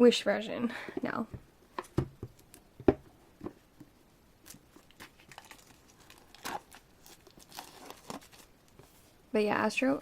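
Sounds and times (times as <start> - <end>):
paper and plastic rustling: 4.5 - 9.2.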